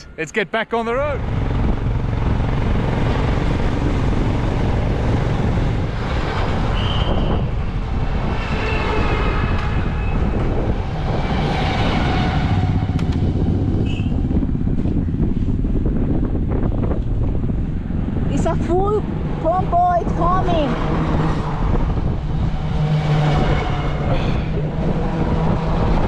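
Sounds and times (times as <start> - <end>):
road and wind noise: 0.0 - 26.0
motorcycle engine running: 1.2 - 6.6.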